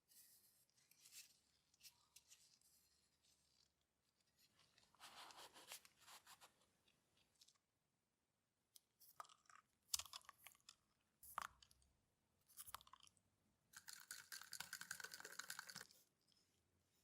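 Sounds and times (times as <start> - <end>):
faint scratching: 0.1 - 6.6.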